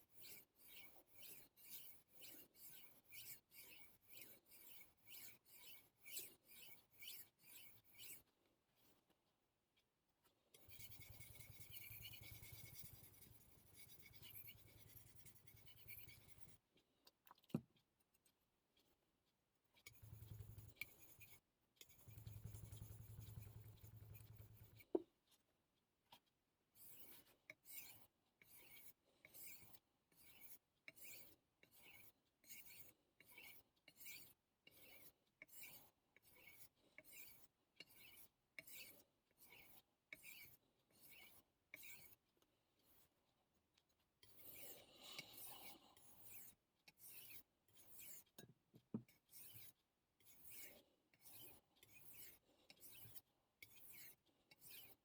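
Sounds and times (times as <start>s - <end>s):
knife scraping on whetstone: 0.2s - 8.2s, 10.6s - 16.6s, 26.8s - 42.2s, 44.2s - 48.4s, 49.3s - 55.0s.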